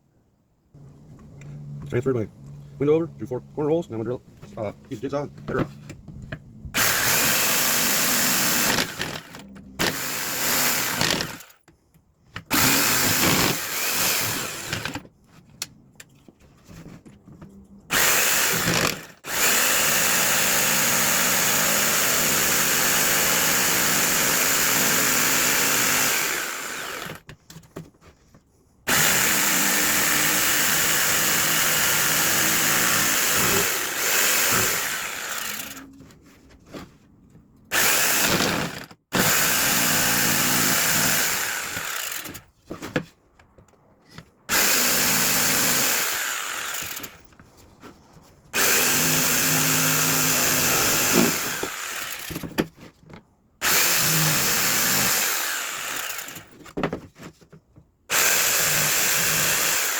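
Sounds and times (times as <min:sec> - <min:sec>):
drill boring into wood: 0:06.8 - 0:11.6, 0:12.5 - 0:15.0, 0:17.9 - 0:27.2, 0:28.9 - 0:35.9, 0:37.7 - 0:42.4, 0:44.5 - 0:47.2, 0:48.6 - 0:52.5, 0:53.6 - 0:56.6, 0:58.1 - 0:59.9
jigsaw cutting wood: 0:06.8 - 0:11.6, 0:12.5 - 0:15.0, 0:17.9 - 0:27.3, 0:28.9 - 0:35.9, 0:37.7 - 0:42.4, 0:44.5 - 0:47.3, 0:48.5 - 0:52.6, 0:53.6 - 0:56.7, 0:58.1 - 0:59.9.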